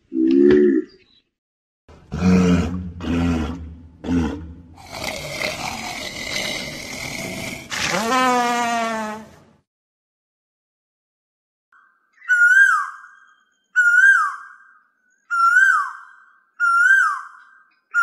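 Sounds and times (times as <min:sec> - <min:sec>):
animal roaring grunts: 0:02.1 - 0:08.0.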